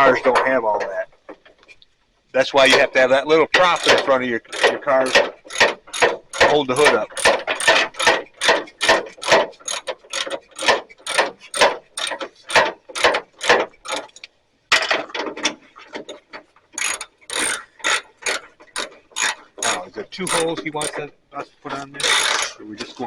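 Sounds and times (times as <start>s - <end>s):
socket ratchet clicking: 3.6s - 14.2s, 16.8s - 21.0s, 22.0s - 22.5s.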